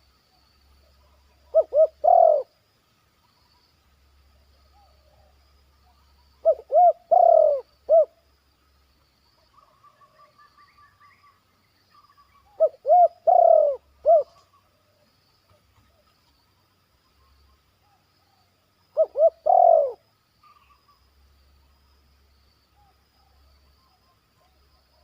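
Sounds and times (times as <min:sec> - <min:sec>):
faint bird chirps: 0:00.0 - 0:25.0
dove cooing: 0:01.0 - 0:02.5, 0:06.4 - 0:08.2, 0:12.5 - 0:14.4, 0:18.9 - 0:20.8.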